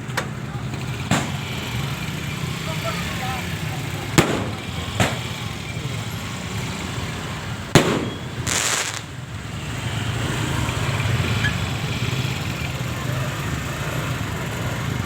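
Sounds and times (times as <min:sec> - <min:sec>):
firework bang: 0:01.1 - 0:01.6, 0:04.2 - 0:05.4, 0:07.7 - 0:09.2.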